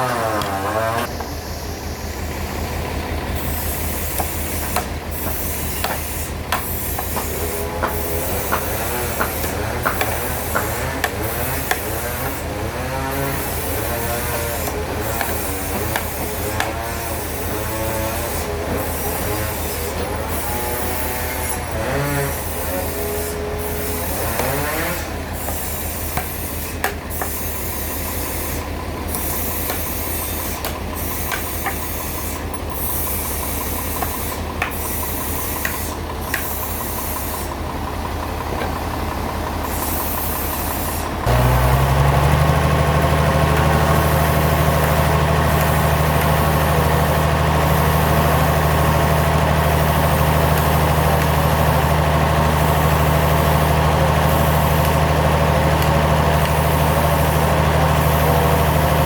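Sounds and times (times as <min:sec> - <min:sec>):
sawmill engine running: 0:00.0 - 0:59.0
knocks and clanks: 0:04.1 - 0:27.4.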